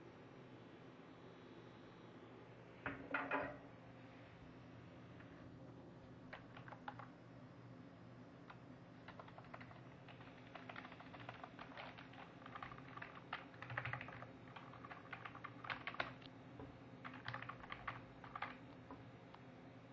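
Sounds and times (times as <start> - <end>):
keyboard typing clicks: 6.3 - 7.1, 8.5 - 16.3, 17.0 - 19.0.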